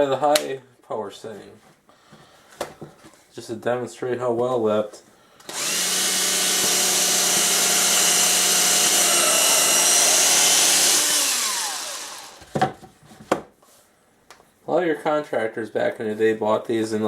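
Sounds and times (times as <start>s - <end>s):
cordless drill motor whining: 5.4s - 12.5s.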